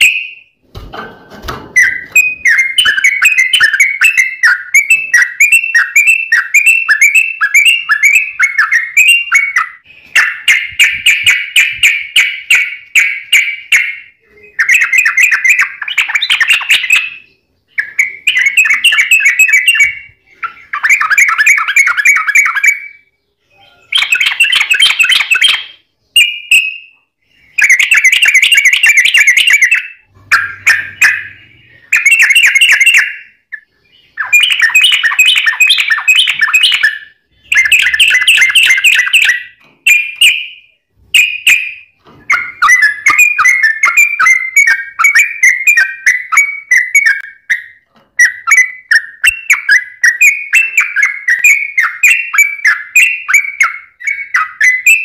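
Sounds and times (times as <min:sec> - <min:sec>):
bird singing chattering phrases: 0:01.8 - 0:55.0.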